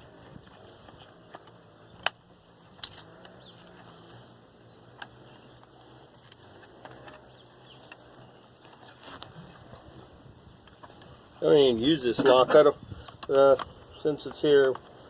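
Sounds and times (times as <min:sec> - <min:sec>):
metallic clicks of latch parts: 0:12.1 - 0:14.9.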